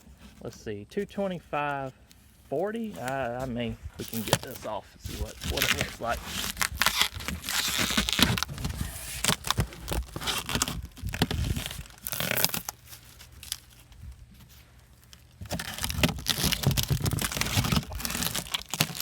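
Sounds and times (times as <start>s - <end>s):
packaging tearing and rustling: 4.0s - 19.0s.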